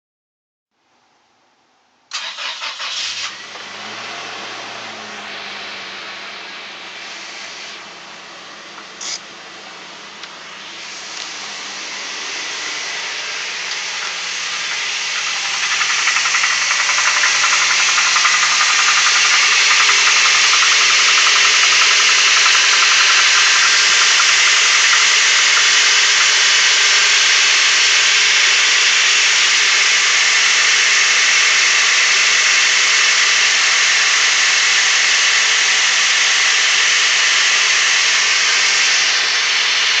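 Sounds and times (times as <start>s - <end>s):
car engine rattling on cold start: 2.1s - 5.0s, 13.4s - 40.0s.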